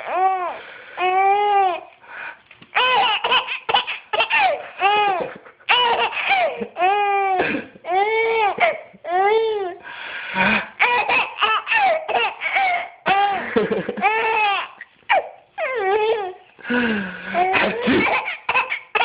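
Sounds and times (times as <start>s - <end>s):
baby laughing: 2.7s - 8.9s, 10.8s - 16.4s, 17.3s - 19.0s.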